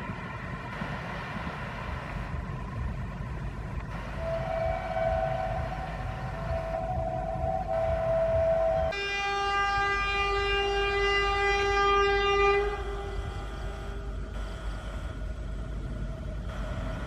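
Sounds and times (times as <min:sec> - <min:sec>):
low rumble of train: 0:00.0 - 0:17.0
locomotive horn: 0:04.1 - 0:14.1.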